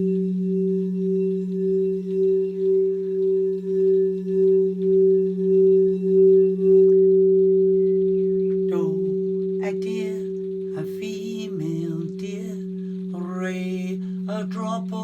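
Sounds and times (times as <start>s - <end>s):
low humming drone: 0.0s - 15.0s
person singing: 8.7s - 15.0s.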